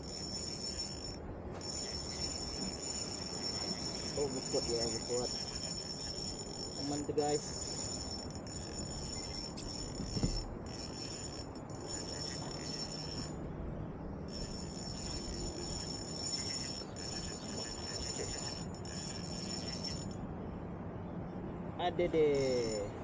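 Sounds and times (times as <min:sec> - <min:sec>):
insects trilling: 0:00.0 - 0:13.4, 0:14.3 - 0:20.2
dull knock: 0:10.0 - 0:10.4.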